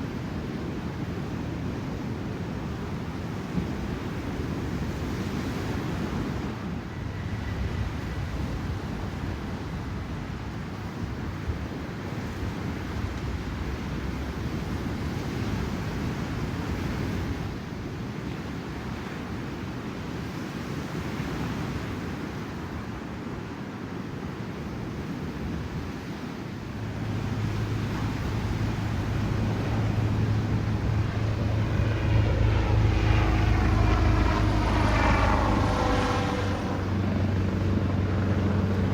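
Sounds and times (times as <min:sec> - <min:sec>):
wind buffeting microphone: 0:25.3 - 0:38.9
ocean surf breaking: 0:26.6 - 0:33.4
steady low hum: 0:26.6 - 0:38.9.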